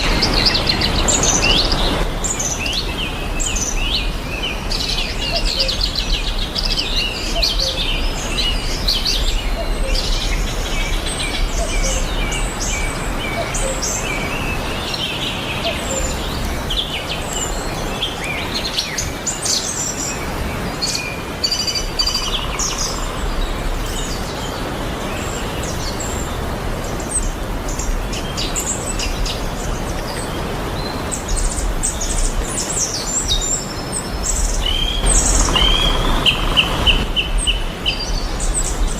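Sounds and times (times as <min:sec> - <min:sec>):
small birds chirping and singing: 0:00.0 - 0:38.9
background hiss: 0:35.0 - 0:37.9.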